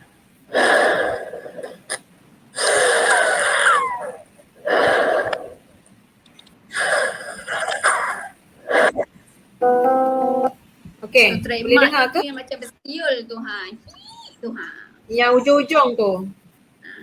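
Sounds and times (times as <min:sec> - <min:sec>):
person wheezing breaths: 0:00.5 - 0:01.9, 0:02.6 - 0:05.6, 0:06.7 - 0:07.7.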